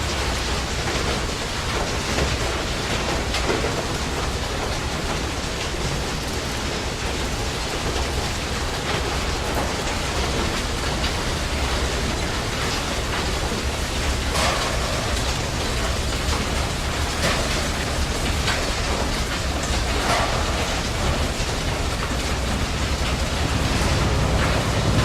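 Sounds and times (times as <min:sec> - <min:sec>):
steady wash of noise: 0:05.5 - 0:25.0
low machine hum: 0:09.8 - 0:25.0.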